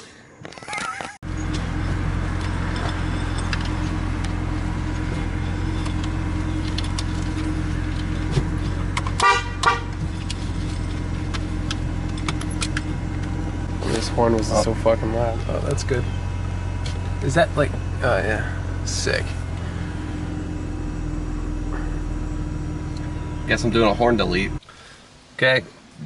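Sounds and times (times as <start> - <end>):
car horn sounding steadily: 8.8 - 10.2.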